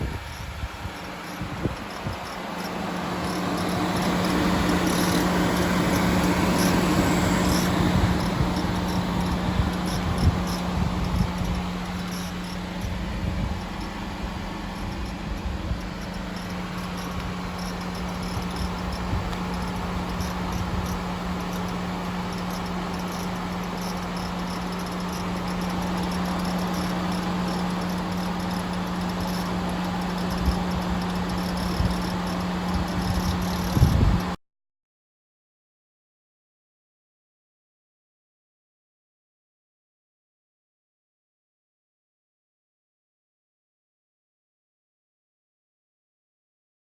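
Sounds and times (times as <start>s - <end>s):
car engine running: 0.0s - 34.4s
faint high chirping ticks: 0.0s - 34.4s.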